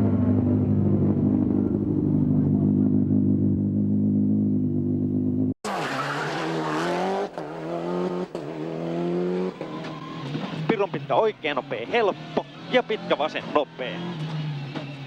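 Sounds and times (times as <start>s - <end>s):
rally car engine revving: 0.0s - 15.0s
tyres on gravel: 5.6s - 8.7s.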